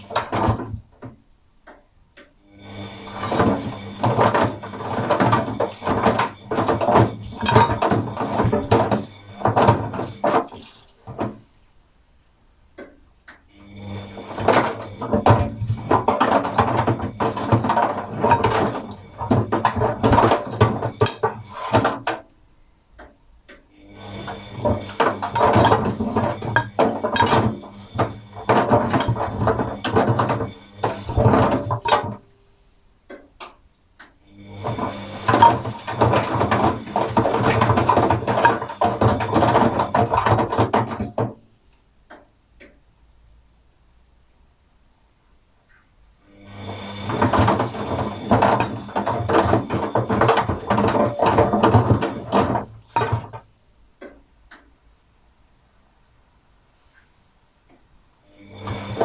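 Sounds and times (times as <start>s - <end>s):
rollers and brushes knocking in drum: 0.0s - 1.2s, 3.0s - 11.5s, 14.1s - 22.3s, 24.1s - 32.3s, 34.6s - 41.5s, 46.7s - 54.7s, 58.6s - 59.0s
washing machine drum tumbling: 0.0s - 1.2s, 2.6s - 11.5s, 13.8s - 22.3s, 24.0s - 32.3s, 34.6s - 41.4s, 46.6s - 54.2s, 58.6s - 59.0s
washing machine motor humming: 0.0s - 1.2s, 2.4s - 11.6s, 13.5s - 22.3s, 23.0s - 32.5s, 34.2s - 41.5s, 46.2s - 54.6s, 58.2s - 59.0s.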